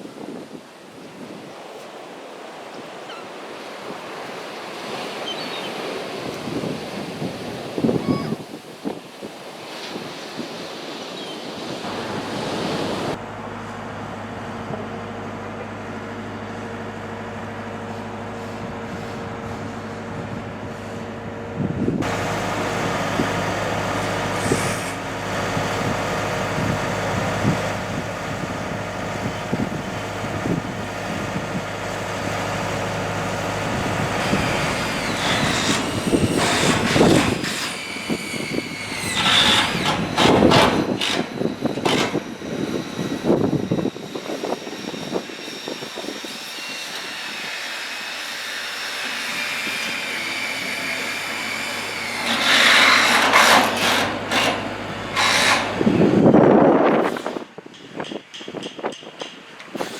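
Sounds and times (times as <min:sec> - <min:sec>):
vehicle engine humming: 0:13.0 - 0:37.3.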